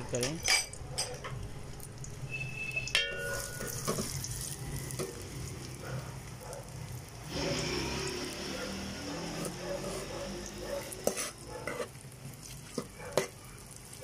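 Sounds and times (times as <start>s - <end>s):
stirring in pan: 0.4s - 14.0s
spice paste sizzling in oil: 1.4s - 14.0s
metal utensil clink: 2.9s - 4.2s.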